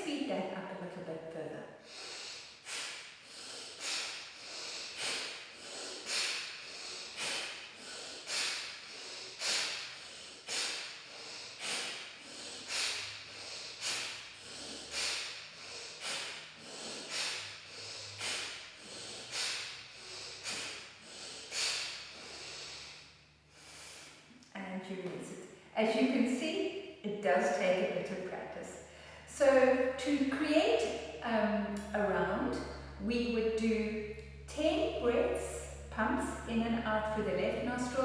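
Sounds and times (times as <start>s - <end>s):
forceful nasal exhales: 1.8s - 24.3s
soft nasal inhales: 1.8s - 24.4s.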